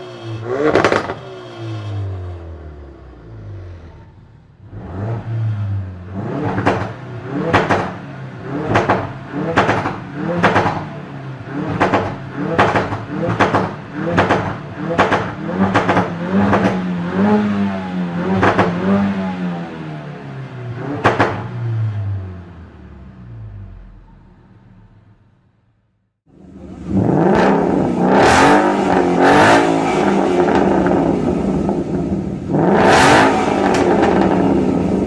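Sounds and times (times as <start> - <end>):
exhaust cracking: 0.0 - 19.6, 26.5 - 35.0
car engine revving: 0.0 - 25.3, 26.3 - 35.0.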